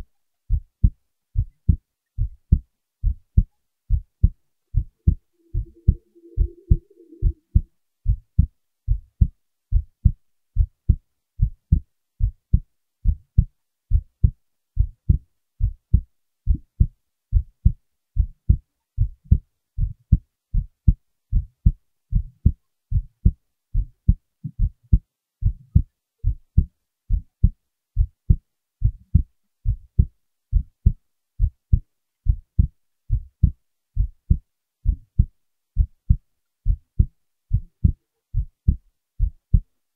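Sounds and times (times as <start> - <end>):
heartbeat thumps: 0.5 - 39.7.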